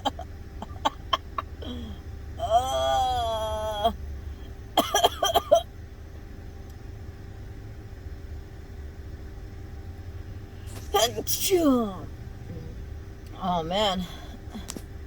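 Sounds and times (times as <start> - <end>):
steady low hum: 0.0 - 15.0
person moaning: 1.6 - 3.9
short sharp vocal outbursts: 10.7 - 11.7.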